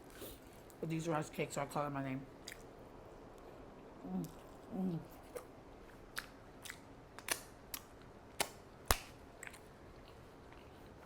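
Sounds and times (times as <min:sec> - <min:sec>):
wet chewing clicks and smacks: 0:06.1 - 0:08.6.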